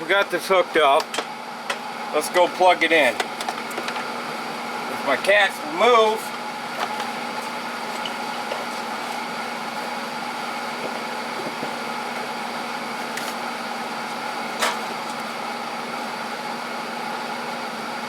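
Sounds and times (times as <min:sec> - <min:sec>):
electrical machine hum: 0:00.0 - 0:18.0.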